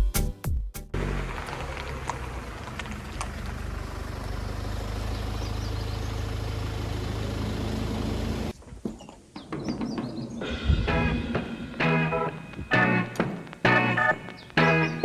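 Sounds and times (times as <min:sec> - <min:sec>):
vehicle engine running: 0:01.0 - 0:08.5, 0:10.6 - 0:15.0
road or rain noise: 0:01.0 - 0:08.6, 0:10.6 - 0:15.0
faint clicks: 0:01.4 - 0:03.6.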